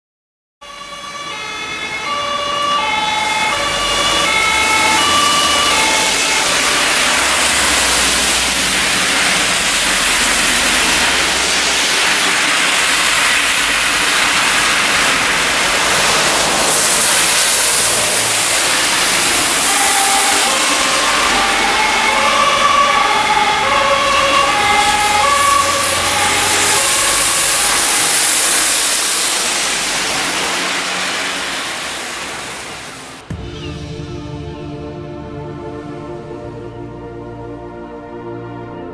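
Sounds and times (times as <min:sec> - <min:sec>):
two-tone siren: 0:00.6 - 0:32.3
heavy rain hiss: 0:02.9 - 0:33.8.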